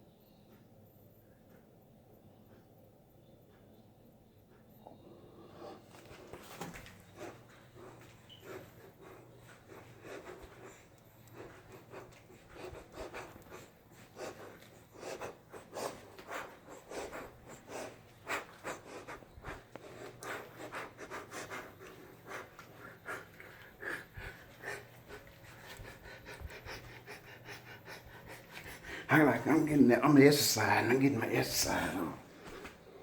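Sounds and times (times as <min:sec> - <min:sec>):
steady low hum: 0:00.0 - 0:33.0
man breathing hard: 0:07.2 - 0:29.1.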